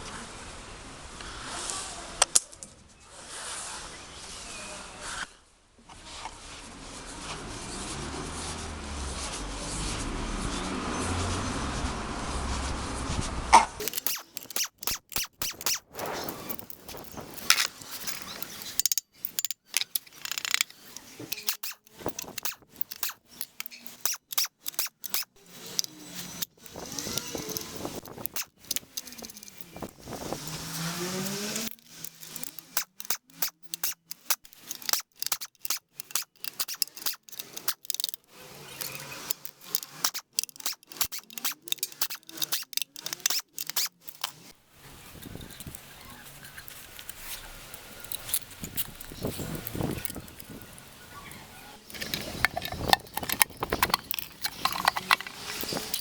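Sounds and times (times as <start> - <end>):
metal tools clinking and rattling: 13.8 - 44.5, 45.2 - 50.8, 51.8 - 56.0.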